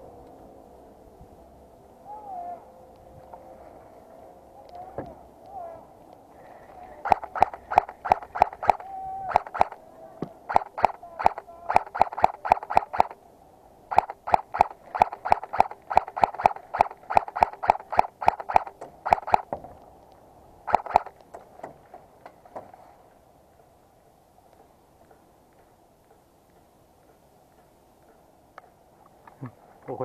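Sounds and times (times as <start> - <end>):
airsoft gun shots: 7.0 - 9.8, 10.5 - 13.2, 13.9 - 19.5, 20.7 - 21.1.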